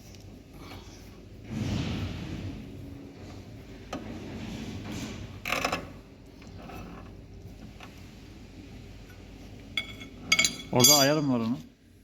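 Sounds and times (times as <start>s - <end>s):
ringing metallic clatter: 9.8s - 11.4s.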